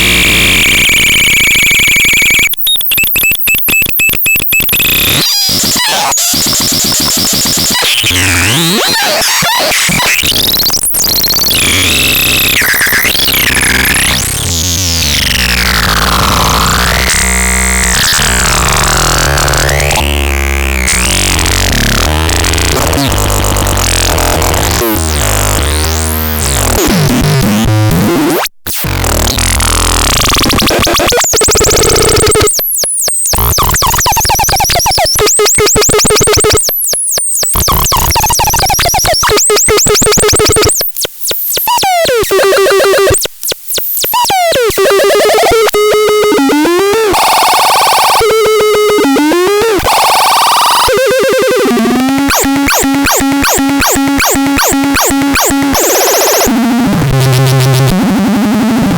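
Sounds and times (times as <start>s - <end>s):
harsh synthesizer tones: 0.0s - 58.9s.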